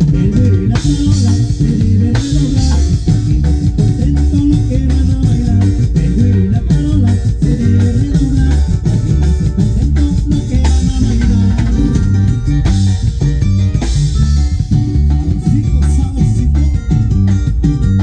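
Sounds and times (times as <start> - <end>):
band playing with heavy bass: 0.0 - 18.0
drums: 0.0 - 18.0.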